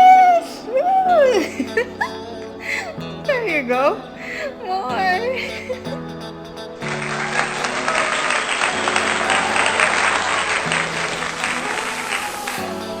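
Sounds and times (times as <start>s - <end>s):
applause: 6.9s - 12.7s.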